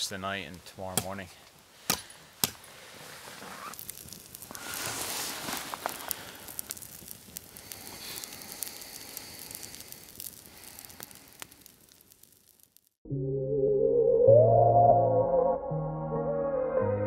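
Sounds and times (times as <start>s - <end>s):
campfire crackling and popping: 0.0s - 13.0s.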